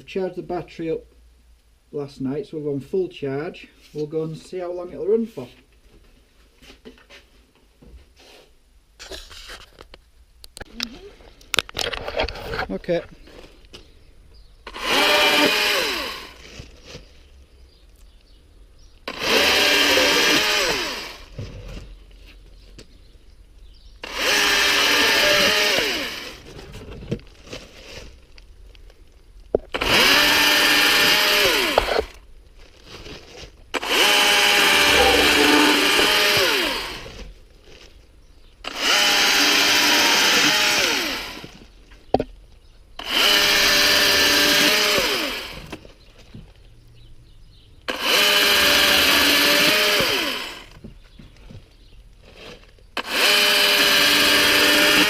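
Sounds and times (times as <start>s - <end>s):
chainsaw cutting log: 14.6s - 17.0s, 19.0s - 21.9s, 24.0s - 26.6s, 29.6s - 32.2s, 33.7s - 37.3s, 38.6s - 41.7s, 43.0s - 45.8s, 47.9s - 50.8s, 52.9s - 55.0s.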